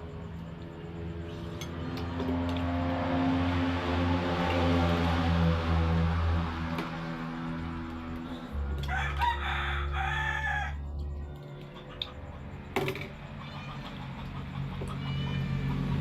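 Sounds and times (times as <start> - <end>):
steady low hum: 5.3 - 16.0
rooster crowing: 8.5 - 12.4.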